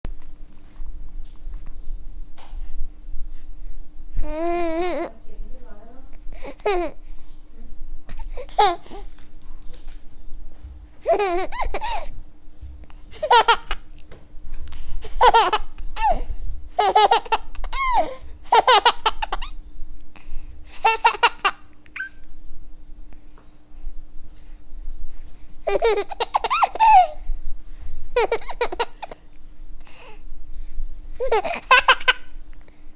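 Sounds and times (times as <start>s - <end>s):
baby giggling: 6.5s - 7.0s, 8.2s - 9.0s, 11.0s - 12.1s, 13.1s - 13.9s, 15.0s - 16.2s, 16.8s - 19.6s, 20.8s - 22.2s, 25.7s - 27.2s, 28.2s - 29.2s, 31.2s - 32.3s.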